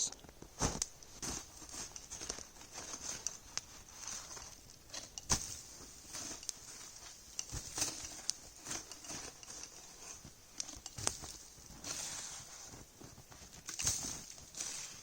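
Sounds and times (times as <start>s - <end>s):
footsteps crunching snow: 11.1s - 15.0s.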